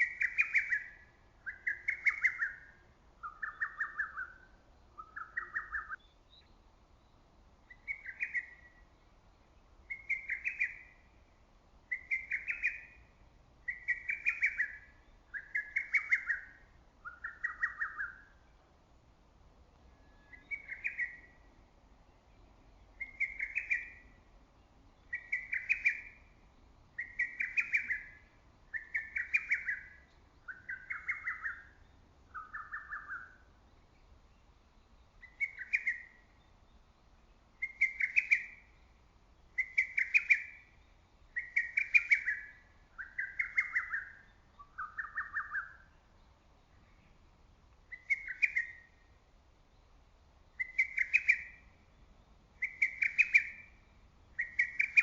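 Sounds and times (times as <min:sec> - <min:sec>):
cuckoo singing: 0:00.0 - 0:06.0, 0:13.7 - 0:18.4, 0:50.6 - 0:51.7, 0:52.6 - 0:53.8, 0:54.4 - 0:55.0.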